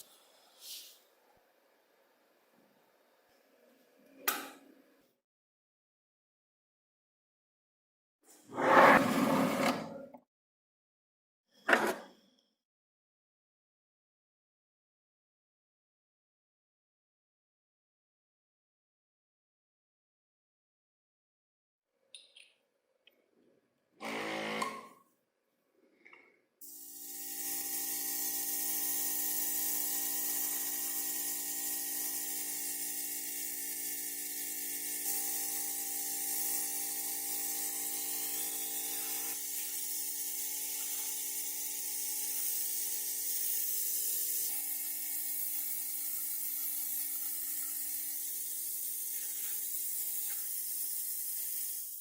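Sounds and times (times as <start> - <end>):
small motor running: 26.6 - 52.0.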